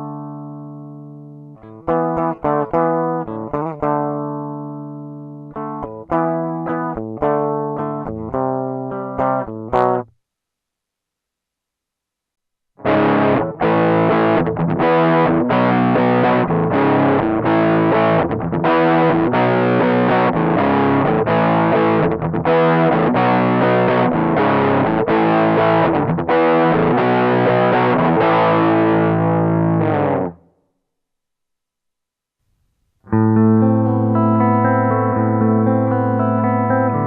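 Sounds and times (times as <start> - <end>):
distorted electric guitar chord stabs: 12.8 - 30.4, 33.1 - 37.0.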